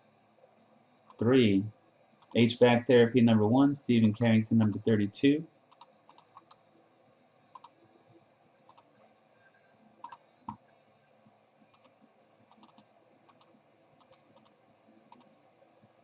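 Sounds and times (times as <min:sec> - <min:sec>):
keyboard and mouse clicks: 0:01.1 - 0:01.3, 0:02.2 - 0:02.5, 0:04.0 - 0:04.9, 0:05.7 - 0:06.6, 0:07.5 - 0:07.8, 0:08.7 - 0:08.9, 0:10.0 - 0:10.6, 0:11.7 - 0:15.4.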